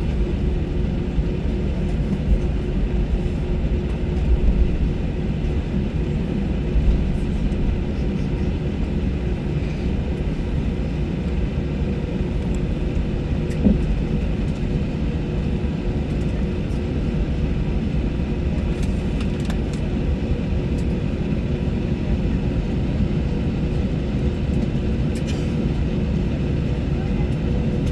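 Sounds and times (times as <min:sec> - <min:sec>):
aircraft engines rumbling in cabin: 0:00.0 - 0:27.9.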